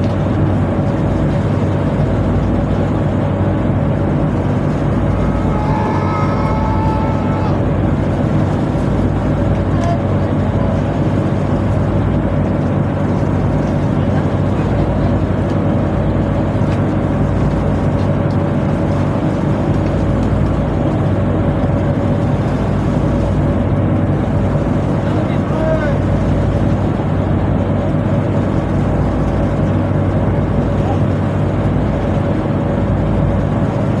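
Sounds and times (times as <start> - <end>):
heavy machinery droning: 3.6 - 10.1.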